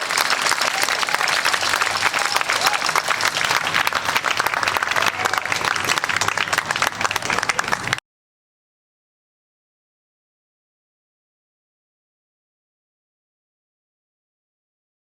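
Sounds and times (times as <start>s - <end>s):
crowd applauding: 0.0s - 8.0s.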